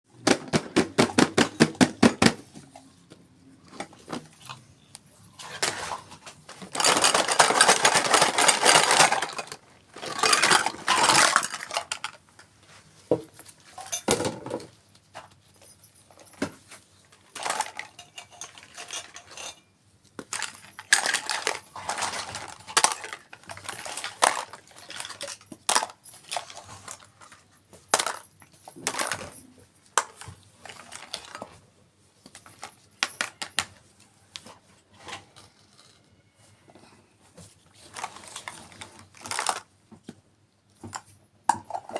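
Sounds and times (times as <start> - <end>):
packaging rustling: 5.5 - 12.2.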